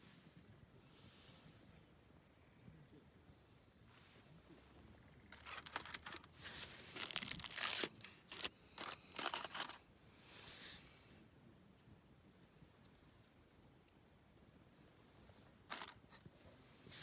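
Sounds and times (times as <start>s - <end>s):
rustling crinkling handling noise: 5.3s - 9.8s, 15.7s - 16.2s.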